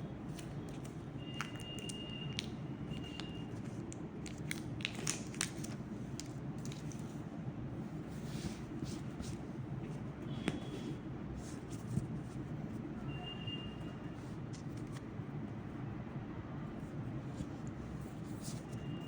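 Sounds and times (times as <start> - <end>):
cards being flipped: 3.0 - 7.1.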